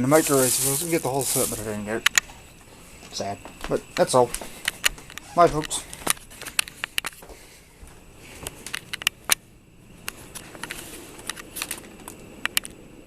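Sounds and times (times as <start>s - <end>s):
faint rustle: 0.0s - 3.1s, 10.0s - 12.2s
sharp clicks and light knocks: 2.0s - 2.4s, 3.6s - 7.4s, 8.4s - 9.4s, 10.0s - 12.8s.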